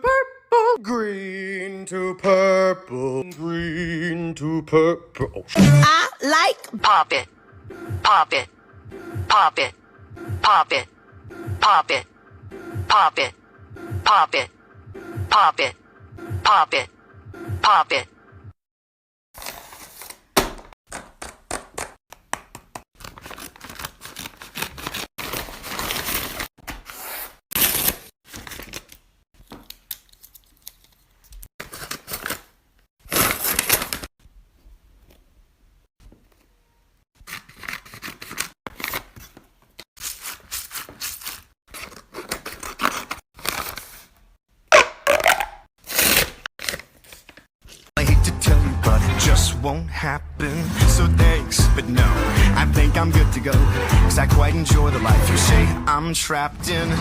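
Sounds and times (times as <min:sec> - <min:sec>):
plastic toys crinkling and clicking: 0:29.4 - 0:31.5.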